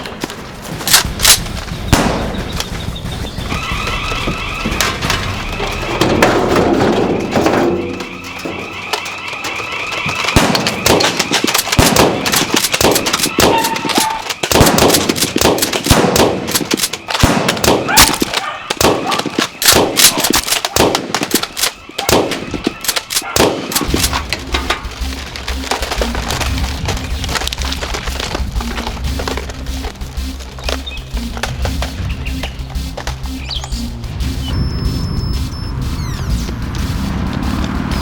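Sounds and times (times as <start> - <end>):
rapid gunfire-like shots: 0.8 - 33.5
warbling siren-like tone: 3.4 - 15.4, 34.1 - 38.0.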